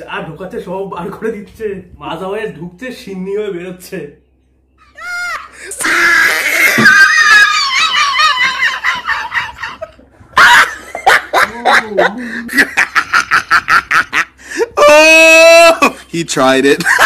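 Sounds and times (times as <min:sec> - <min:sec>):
people laughing hard: 0:04.9 - 0:16.1, 0:16.8 - 0:17.0.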